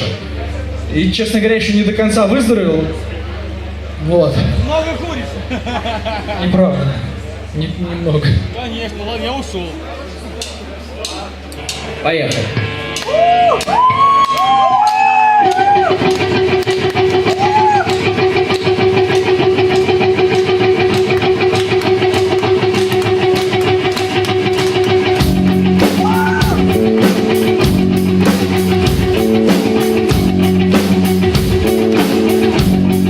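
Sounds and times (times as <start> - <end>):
drum kit beat: 10.4 - 33.0
rock guitars: 11.1 - 33.0.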